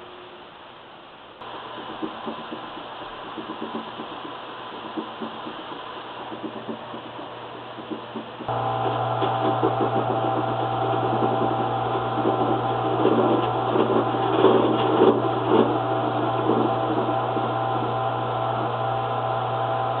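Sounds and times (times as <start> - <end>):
washing machine hum and whine: 0.0 - 20.0
rattling knocking noise: 6.3 - 17.7.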